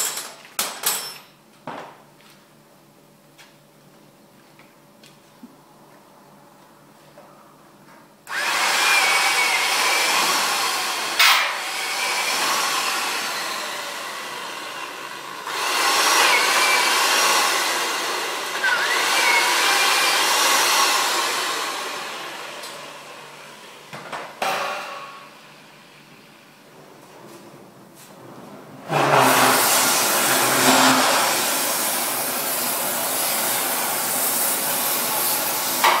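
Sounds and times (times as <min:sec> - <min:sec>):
loud rushing hiss: 0:28.9 - 0:36.0.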